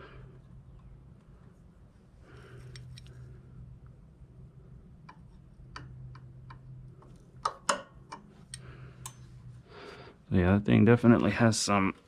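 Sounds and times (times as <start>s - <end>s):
steady low hum: 0.0s - 12.0s
light metallic clicks and taps: 5.0s - 9.3s.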